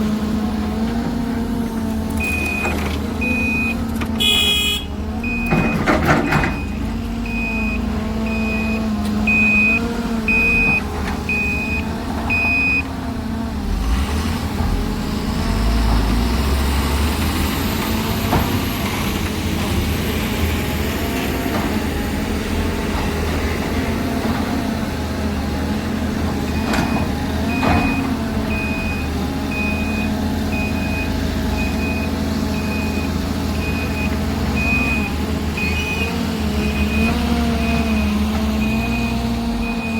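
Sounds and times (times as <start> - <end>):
heavy diesel machinery running: 0.0 - 39.9
reversing alarm beeping: 2.2 - 12.9, 26.5 - 39.9.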